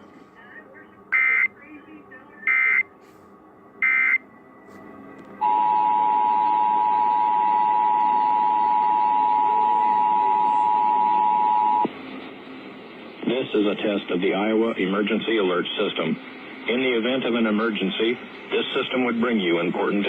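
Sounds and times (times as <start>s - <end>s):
digital data tones: 3.8s - 4.2s
two-tone attention signal: 3.8s - 4.2s, 5.4s - 11.9s.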